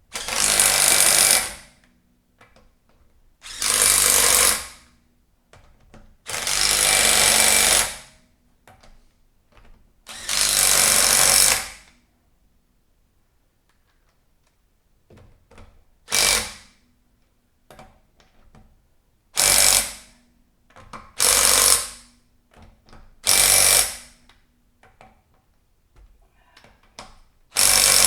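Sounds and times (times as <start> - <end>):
impact wrench bursts: 21.2 - 22.0, 27.6 - 28.0.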